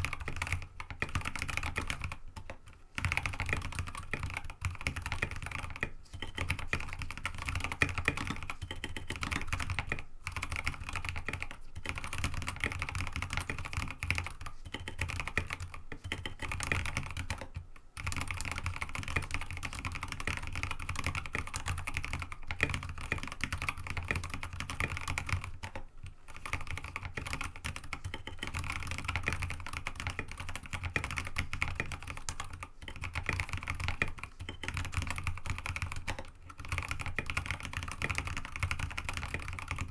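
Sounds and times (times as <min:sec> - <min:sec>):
mechanical keyboard typing: 0:00.0 - 0:39.9.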